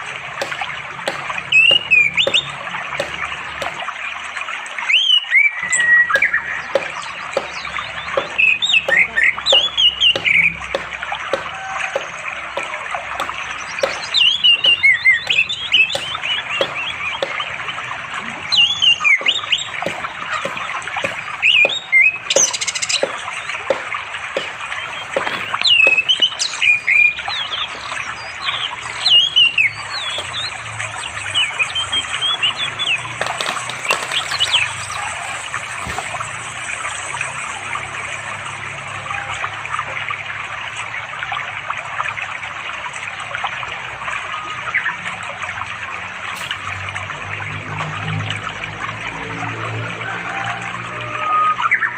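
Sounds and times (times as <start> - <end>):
flowing stream: 0.0 - 51.9
thrush singing: 4.9 - 38.8.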